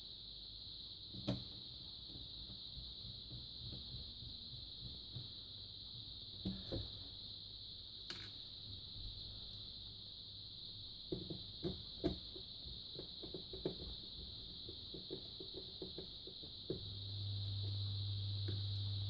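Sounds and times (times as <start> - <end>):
steady low hum: 13.9 - 19.0.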